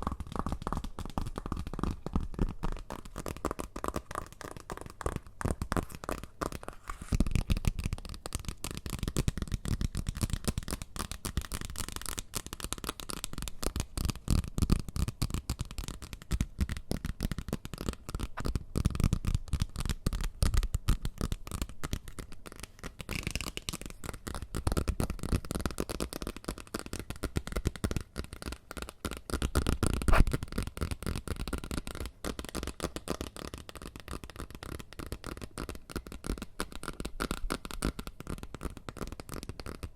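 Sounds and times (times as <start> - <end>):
fast tapping and rustling: 0.0 - 39.9.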